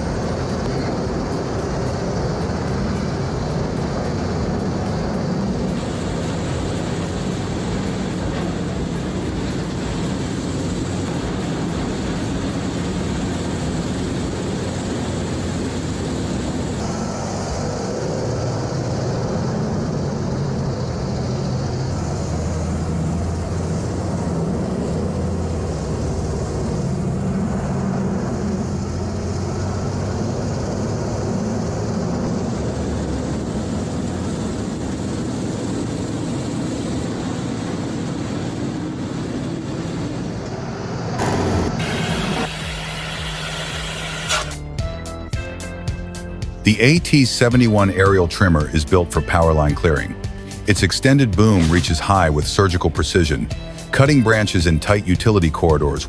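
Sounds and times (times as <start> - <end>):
steady machine hum: 0.0 - 44.7
heavy machinery engine drone: 0.0 - 45.2, 46.0 - 56.0.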